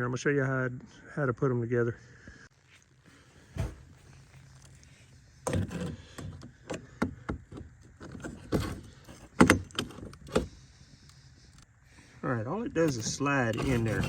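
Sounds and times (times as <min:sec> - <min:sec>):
clamps knocking and scraping on rail: 0:05.4 - 0:10.5, 0:12.8 - 0:14.0.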